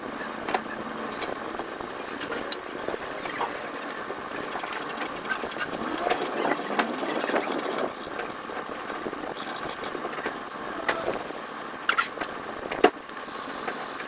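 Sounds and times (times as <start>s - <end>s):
steady background noise: 0.0s - 14.0s
indistinct voices: 10.6s - 11.3s.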